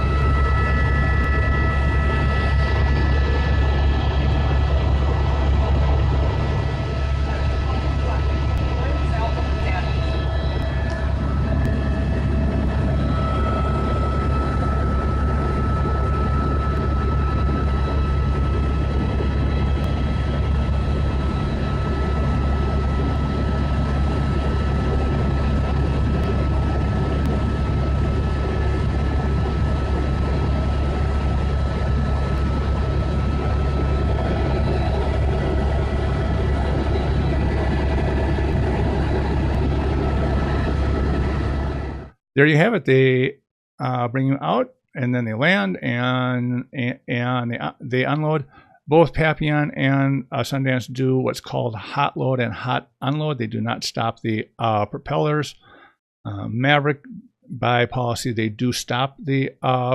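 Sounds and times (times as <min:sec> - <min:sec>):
helicopter rotor and engine drone: 0:00.0 - 0:42.2
high whine: 0:00.0 - 0:43.2.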